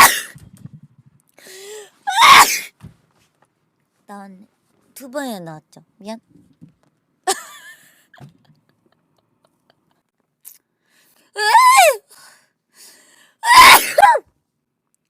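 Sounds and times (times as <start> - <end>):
woman sneezing: 0.0 - 0.4, 13.4 - 14.2
faint inhale: 1.4 - 2.0, 12.1 - 13.4.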